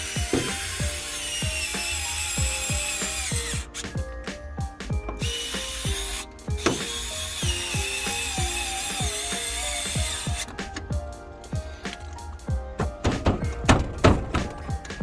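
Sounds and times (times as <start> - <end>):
cordless drill whining: 0.0 - 11.0
background music with steady beat: 0.0 - 15.0.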